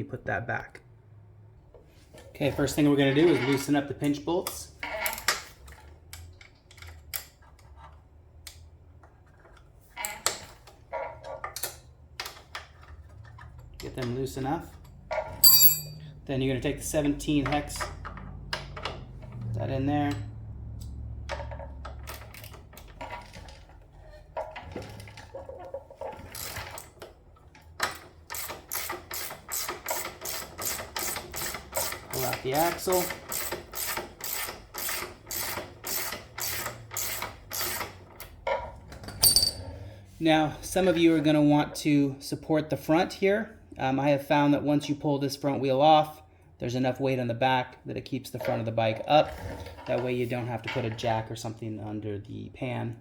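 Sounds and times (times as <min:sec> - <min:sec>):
light metallic clinks: 0:15.4 - 0:16.1
ratchet clicking: 0:28.3 - 0:32.2, 0:33.0 - 0:37.9.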